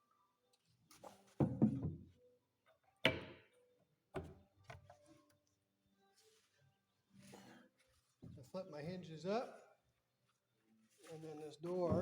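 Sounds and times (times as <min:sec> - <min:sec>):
wooden cabinet door knocks: 0:01.4 - 0:02.0.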